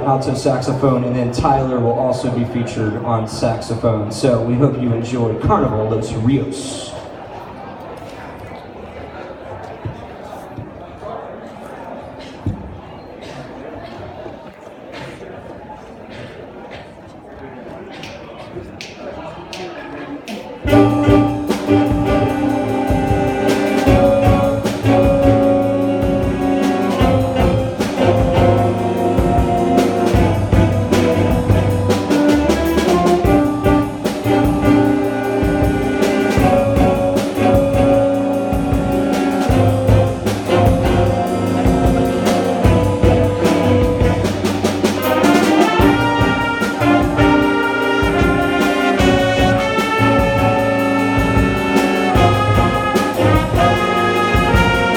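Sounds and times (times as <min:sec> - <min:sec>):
jazz band playing: 0:20.6 - 0:54.9.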